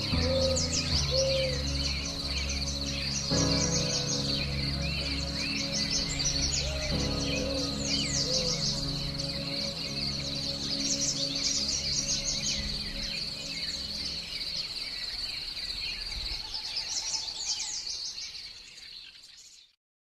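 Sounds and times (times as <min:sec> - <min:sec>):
low held music tone: 0:00.0 - 0:15.3
crickets trilling: 0:00.0 - 0:16.5
birds chirping: 0:00.0 - 0:19.7.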